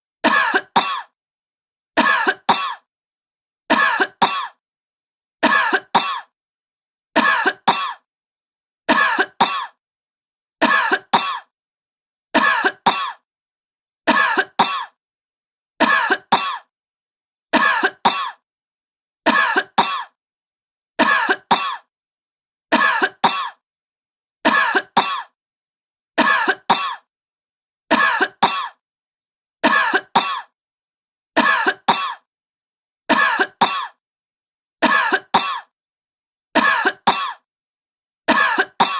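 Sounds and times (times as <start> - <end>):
woman coughing: 0.2 - 1.2, 2.0 - 2.9, 3.7 - 4.6, 5.4 - 6.4, 7.2 - 8.1, 8.9 - 9.8, 10.6 - 11.5, 12.4 - 13.2, 14.1 - 15.0, 15.8 - 16.7, 17.6 - 18.4, 19.3 - 20.2, 21.0 - 21.9, 22.8 - 23.6, 24.5 - 25.4, 26.2 - 27.1, 27.9 - 28.8, 29.6 - 30.6, 31.4 - 32.3, 33.1 - 34.0, 34.9 - 35.7, 36.6 - 37.5, 38.3 - 38.9.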